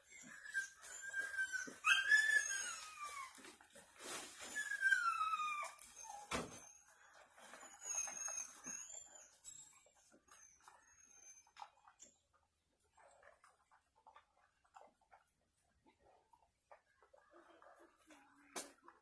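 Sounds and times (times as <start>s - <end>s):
dog whining: 0.0s - 3.6s, 4.4s - 6.8s, 7.6s - 9.7s.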